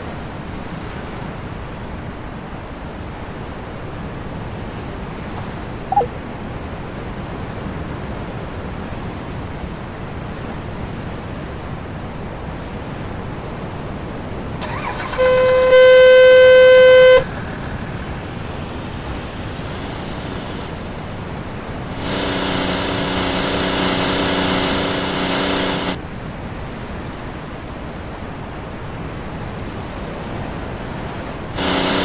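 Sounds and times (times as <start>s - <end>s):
boat engine droning: 5.9s - 6.2s, 14.6s - 26.0s, 30.6s - 32.0s.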